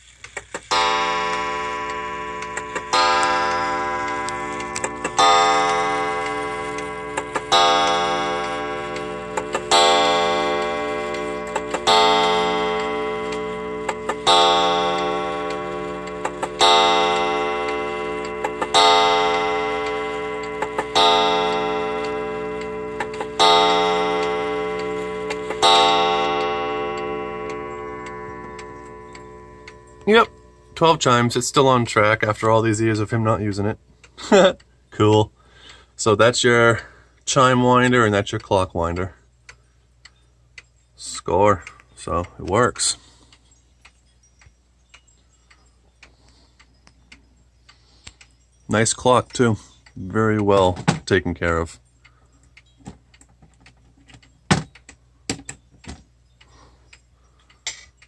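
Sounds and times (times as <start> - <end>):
clock ticking: 0.2 - 58.0
clock striking: 0.3 - 39.2, 40.1 - 58.0.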